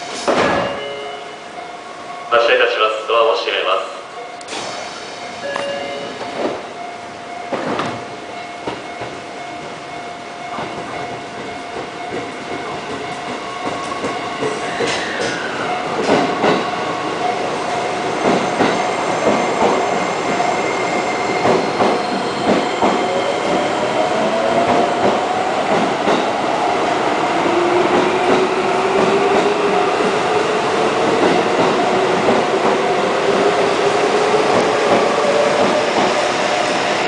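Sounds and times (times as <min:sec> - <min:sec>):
train wheels clacking on rail joints: 0:10.5 - 0:16.8, 0:18.2 - 0:23.7.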